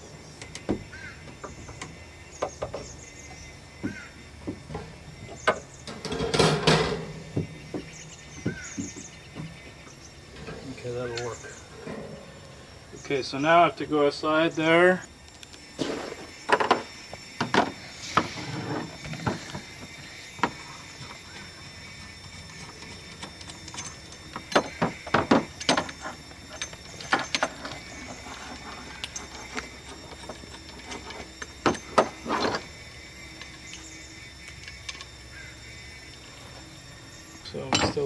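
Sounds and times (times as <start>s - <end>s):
faint steady background hum: 0.0s - 38.0s
tools and materials clattering: 3.8s - 13.2s, 22.3s - 33.9s, 37.6s - 38.0s.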